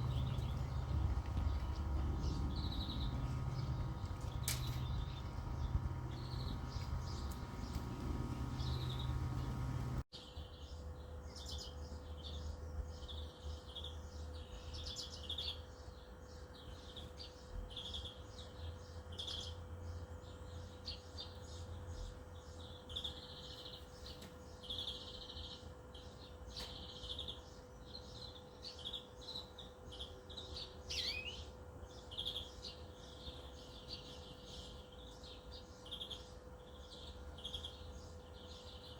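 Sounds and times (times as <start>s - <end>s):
steady low hum: 0.0s - 10.1s
songbirds singing: 0.0s - 38.9s.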